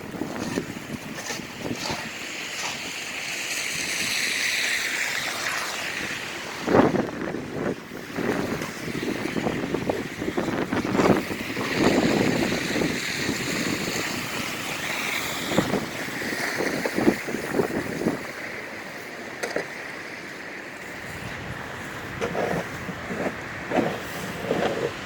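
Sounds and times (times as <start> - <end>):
wind on microphone: 0.0 - 3.0, 5.8 - 18.5, 20.8 - 25.0
street traffic: 0.0 - 25.0.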